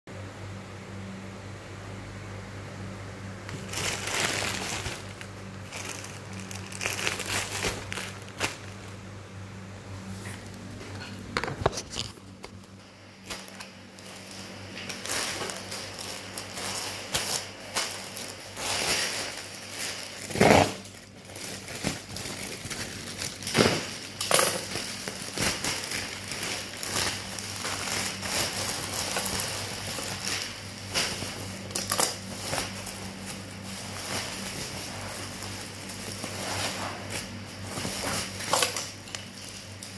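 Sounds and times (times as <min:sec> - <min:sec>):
steady low hum: 0:00.1 - 0:39.9
packaging crinkling and rustling: 0:03.5 - 0:09.1, 0:10.0 - 0:39.9.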